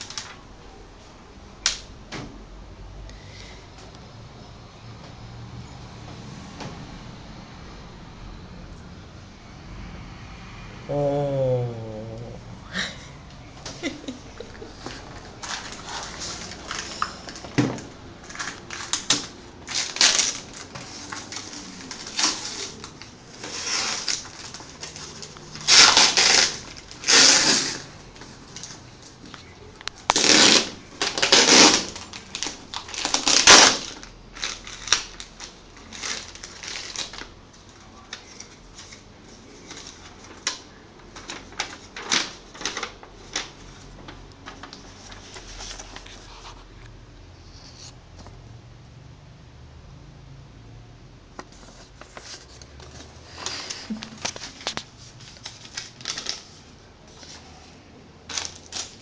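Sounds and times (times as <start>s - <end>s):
keyboard packaging rustling: 13.8s - 46.6s, 51.4s - 59.0s.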